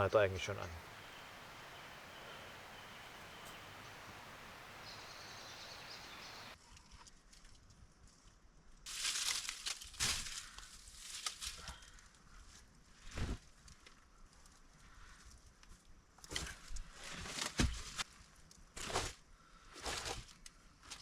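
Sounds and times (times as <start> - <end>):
outdoor background hiss: 0.0 - 6.6.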